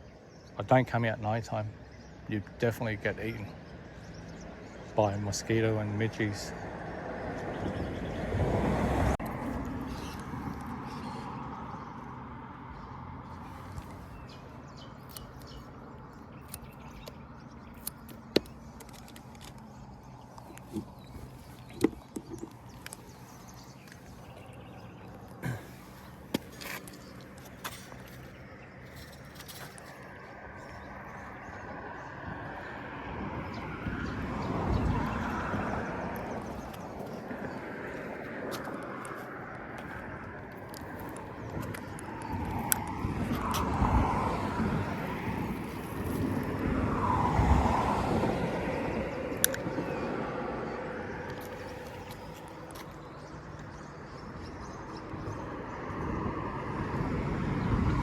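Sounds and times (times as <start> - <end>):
vehicle passing by: 5.8 - 14.8, 23.0 - 53.7, 54.4 - 58.0.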